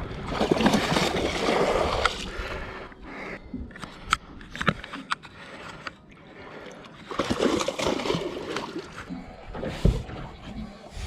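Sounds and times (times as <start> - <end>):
water splashing against boat: 0.0 - 2.8, 6.4 - 11.0.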